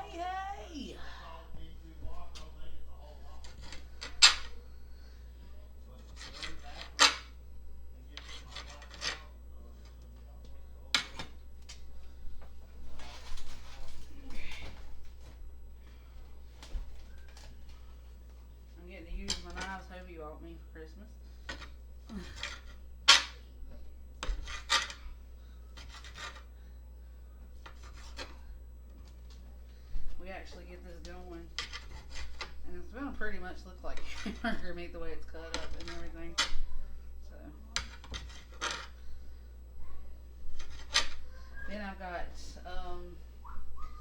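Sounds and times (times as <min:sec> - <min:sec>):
steady low hum: 0:00.0 - 0:44.0
kitchen utensil scraping: 0:03.3 - 0:05.1, 0:06.0 - 0:07.4, 0:08.1 - 0:09.4, 0:24.2 - 0:25.0, 0:25.8 - 0:26.5, 0:27.6 - 0:28.4, 0:31.4 - 0:36.6, 0:37.8 - 0:39.1, 0:40.5 - 0:41.8.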